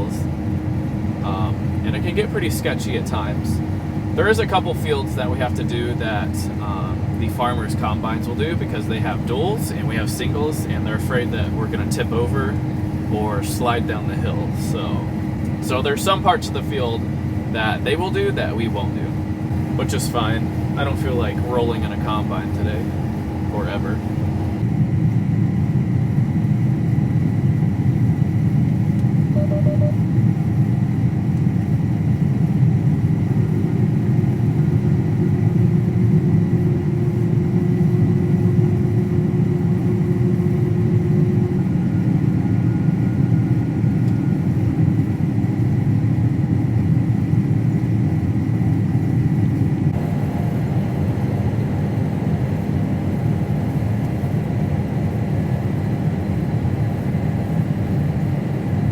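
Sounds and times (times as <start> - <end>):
faint whine: 0.0 - 25.2, 29.0 - 30.7
harvester low rumble: 0.0 - 25.4
short high beep: 29.4 - 30.0.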